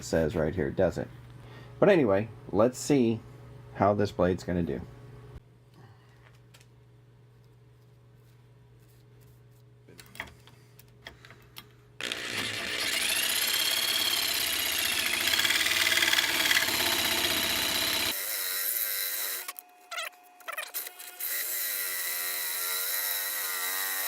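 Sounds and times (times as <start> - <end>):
jigsaw motor running: 12.0 - 19.5.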